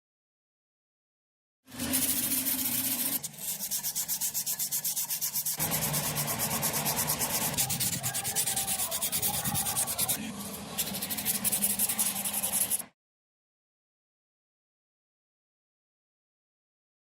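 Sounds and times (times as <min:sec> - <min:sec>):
metal part being scraped by hand: 0:01.7 - 0:12.9.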